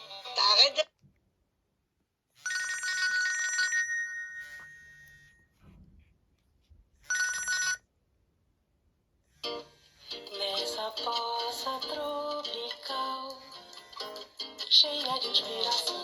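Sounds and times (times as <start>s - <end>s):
phone ringtone bell: 2.4s - 5.5s, 7.1s - 7.9s.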